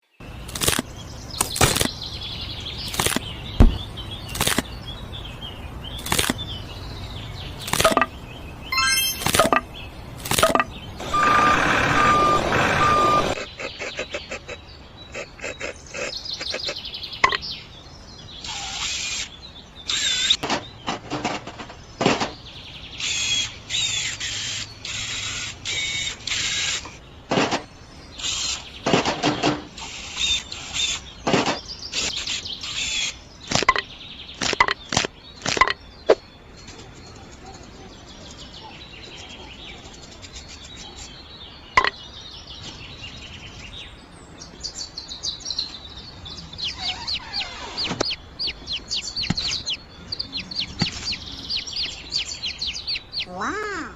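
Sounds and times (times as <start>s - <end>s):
high bird chirps: 7.6s - 14.3s, 44.6s - 53.9s.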